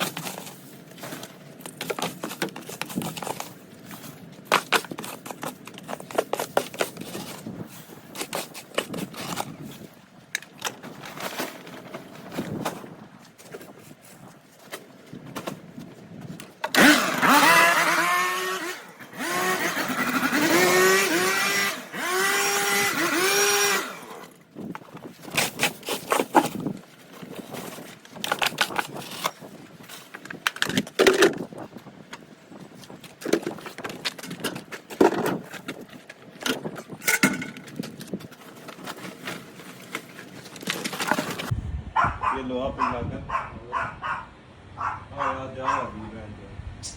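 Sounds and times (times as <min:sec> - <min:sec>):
small petrol engine revving: 0:16.7 - 0:24.3
clatters and knocks: 0:33.0 - 0:41.5.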